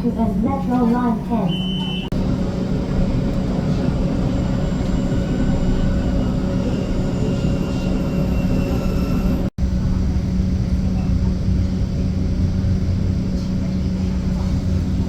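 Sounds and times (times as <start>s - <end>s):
tram hum and rumble: 0.0s - 15.0s
faint high whine: 1.6s - 9.9s.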